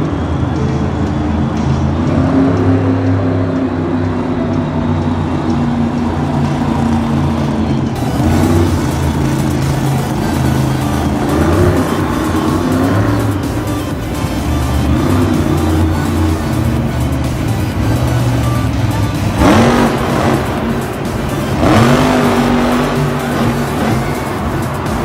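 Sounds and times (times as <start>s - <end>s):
big engines revving: 0.0s - 25.0s
music playing: 0.0s - 25.0s.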